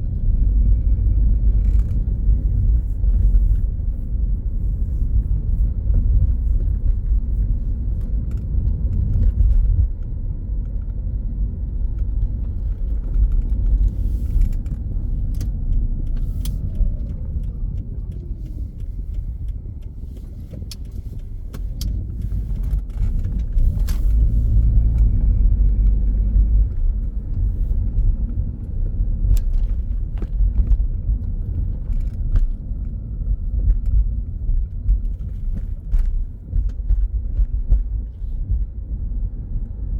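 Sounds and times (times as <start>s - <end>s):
steady low rumble: 0.0s - 39.9s.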